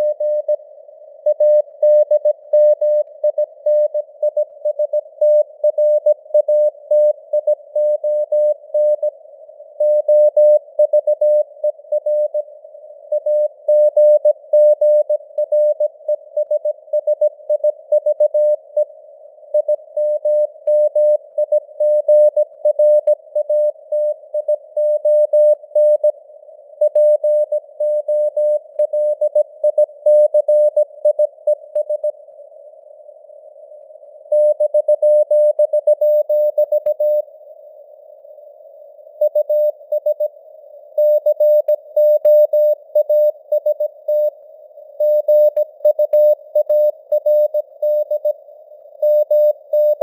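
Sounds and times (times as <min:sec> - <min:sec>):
faint radio noise hiss: 0:00.0 - 0:02.5, 0:03.1 - 0:30.0, 0:30.8 - 0:50.0
morse code tone: 0:49.0 - 0:50.0.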